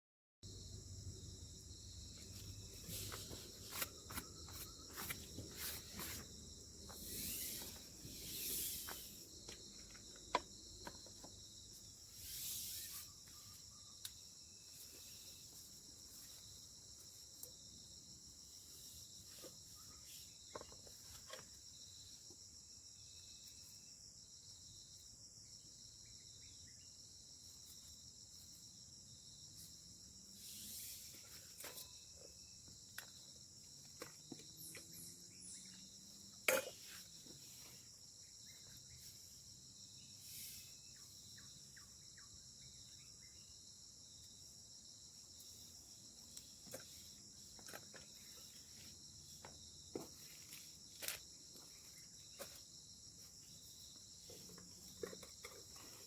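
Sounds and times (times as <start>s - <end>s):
insect chorus: 0.4s - 56.0s.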